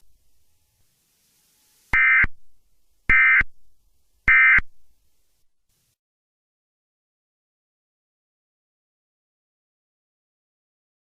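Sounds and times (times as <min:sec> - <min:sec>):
digital data tone bursts: 0:01.9 - 0:02.4, 0:04.3 - 0:04.6.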